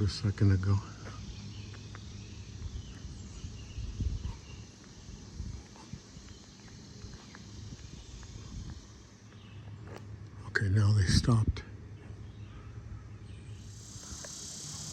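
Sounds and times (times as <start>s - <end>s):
cicadas hissing: 0.0s - 10.1s, 13.5s - 14.9s
footsteps on a trail: 4.3s - 10.1s.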